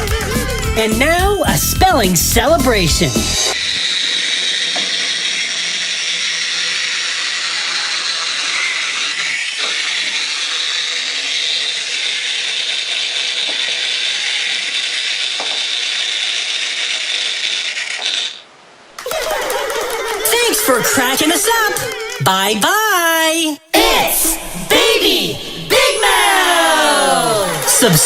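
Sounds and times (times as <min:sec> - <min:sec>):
loud steady hiss: 0:00.0 - 0:21.8.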